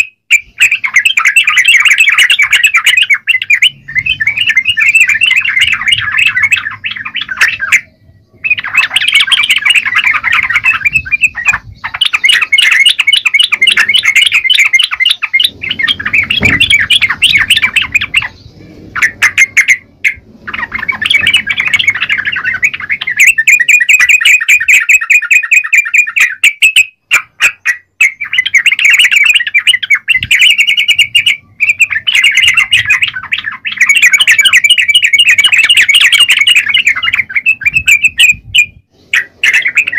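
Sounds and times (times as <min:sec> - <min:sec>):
bird singing chattering phrases: 0:00.0 - 0:39.9.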